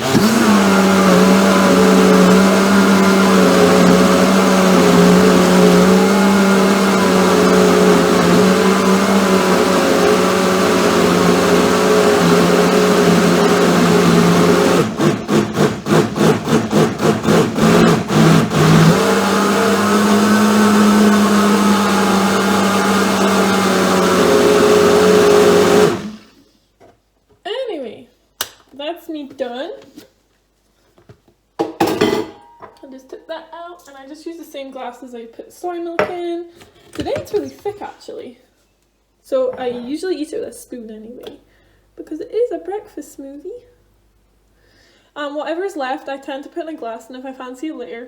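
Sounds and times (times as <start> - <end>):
blender motor running: 0.0 - 26.3.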